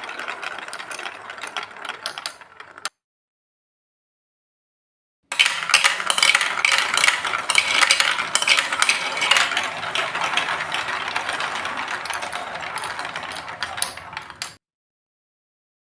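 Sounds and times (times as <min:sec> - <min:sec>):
glass marbles clattering down plastic run: 0:00.0 - 0:02.9, 0:05.3 - 0:14.6.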